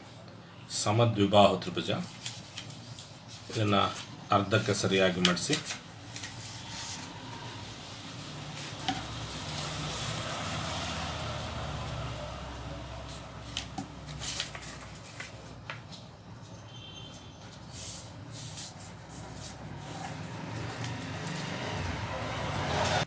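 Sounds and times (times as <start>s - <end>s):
paper crackling: 1.9s - 4.1s, 4.8s - 10.1s, 13.1s - 16.1s, 17.5s - 21.9s
paper being folded and creased: 2.0s - 4.1s, 5.1s - 10.1s, 13.1s - 16.1s.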